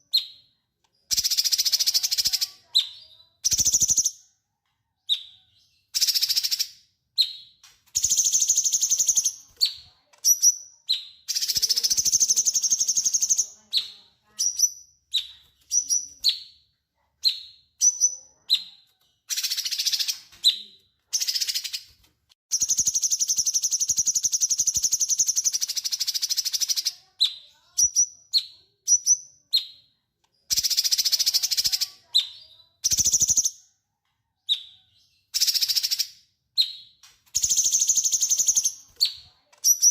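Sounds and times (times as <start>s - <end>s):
bird chirps: 0.0s - 33.7s, 34.4s - 39.9s.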